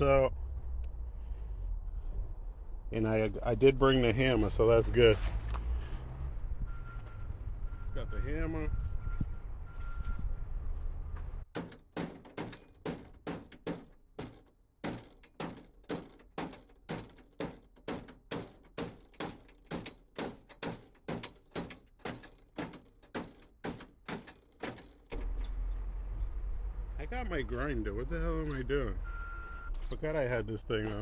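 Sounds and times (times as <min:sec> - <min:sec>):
hammer pounding on metal: 0:11.5 - 0:25.1.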